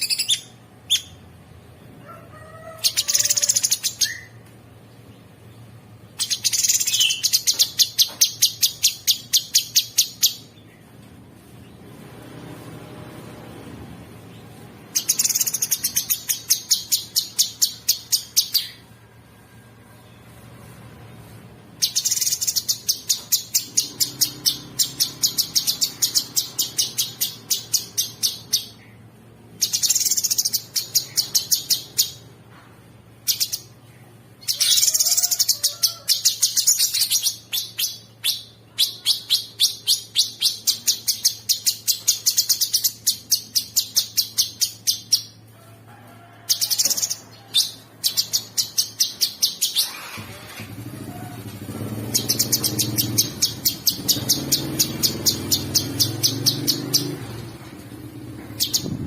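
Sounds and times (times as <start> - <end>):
songbird rapid rattling trill: 15.0 - 18.8, 29.6 - 32.2.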